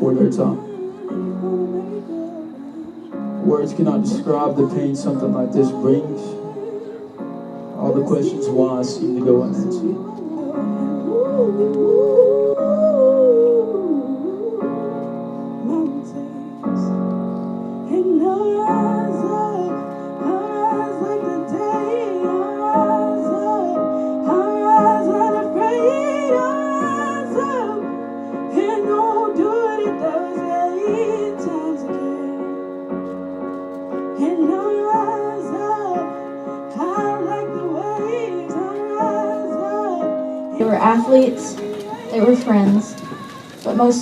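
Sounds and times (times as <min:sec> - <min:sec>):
woman singing: 0:00.0 - 0:17.1, 0:17.8 - 0:32.8, 0:34.1 - 0:44.0
sustained keyboard chords: 0:00.0 - 0:44.0.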